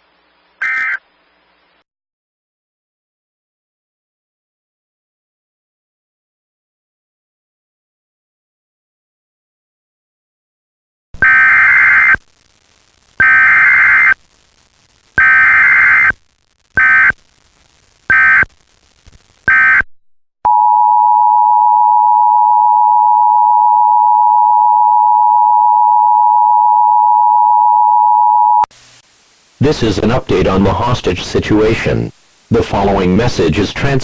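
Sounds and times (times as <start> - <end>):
digital header data bursts: 11.2 - 12.2, 13.2 - 14.2, 15.2 - 16.2, 16.8 - 17.2, 18.1 - 18.5, 19.5 - 19.8, 29.6 - 34.0.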